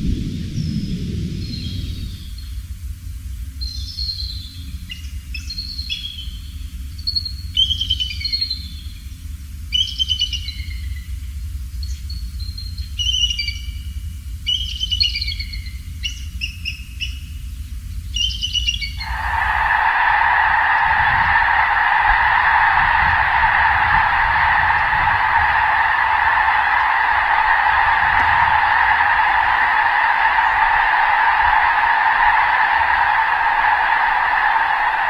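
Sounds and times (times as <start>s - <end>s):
eagles chittering calls: 18.2s - 35.0s
steady low rumble: 18.9s - 35.0s.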